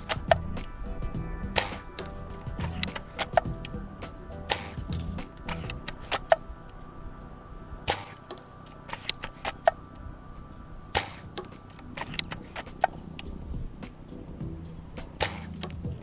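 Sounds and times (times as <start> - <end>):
airsoft rifle shots: 4.5 - 6.3, 7.9 - 9.6, 11.0 - 11.4, 15.1 - 15.7.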